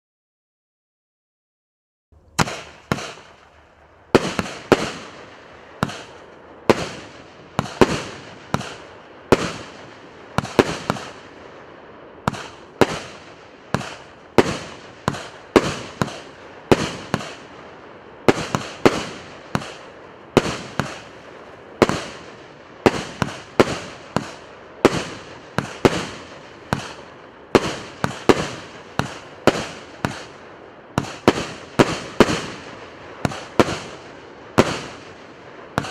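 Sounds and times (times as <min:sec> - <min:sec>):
firework hiss: 0:02.2 - 0:11.6
firework reports: 0:02.2 - 0:35.9.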